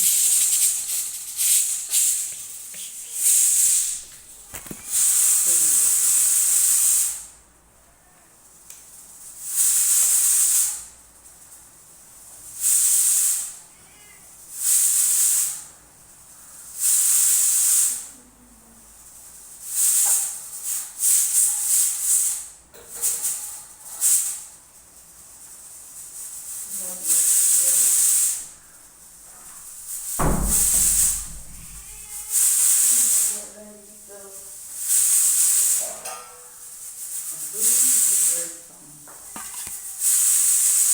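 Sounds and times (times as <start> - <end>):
steam hissing from a pot: 0.0 - 40.9.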